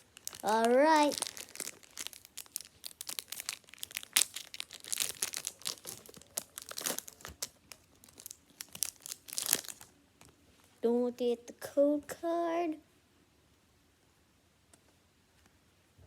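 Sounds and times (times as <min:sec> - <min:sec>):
foil wrapper tearing and crinkling: 0:00.0 - 0:09.9.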